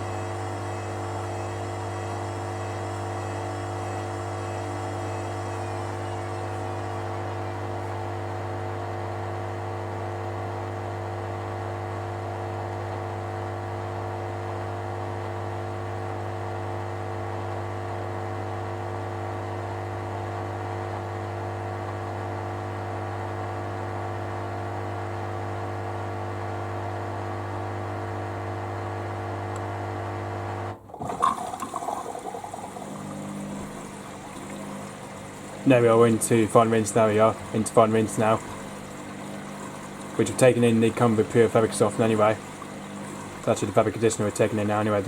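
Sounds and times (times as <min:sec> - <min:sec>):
washing machine drum spinning: 0:30.8 - 0:45.0.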